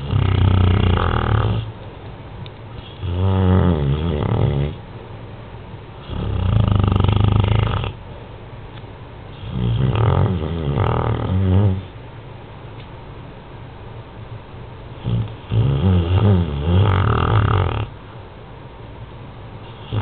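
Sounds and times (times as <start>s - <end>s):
dog snoring: 0.0s - 1.7s, 2.8s - 4.8s, 6.0s - 8.0s, 9.4s - 12.0s, 15.0s - 18.0s, 19.6s - 20.0s
dog breathing: 0.0s - 1.8s.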